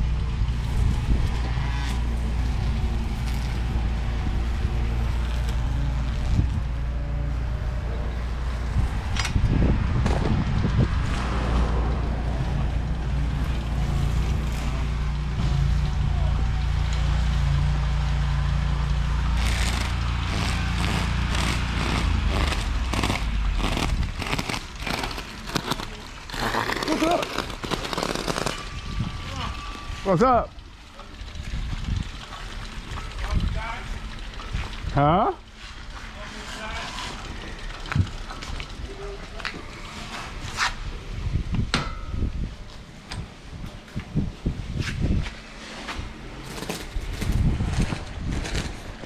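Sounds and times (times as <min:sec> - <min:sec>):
wind rumble on microphone: 0:00.0 - 0:17.0, 0:28.5 - 0:30.6, 0:31.2 - 0:35.4, 0:37.8 - 0:49.0
two-stroke engine running: 0:19.1 - 0:35.1
rough crunching and crackling: 0:19.3 - 0:30.2, 0:46.3 - 0:49.0.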